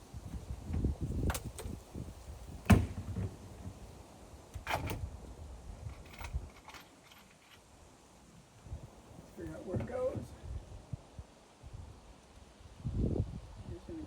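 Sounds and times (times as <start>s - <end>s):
wooden boards bumping and scraping: 2.7s - 4.0s.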